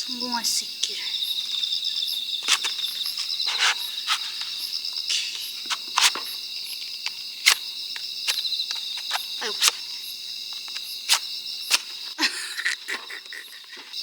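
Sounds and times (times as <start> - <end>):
crickets chirping: 0.0 - 14.0
sharp snaps and clicks: 7.0 - 9.8, 10.5 - 12.0.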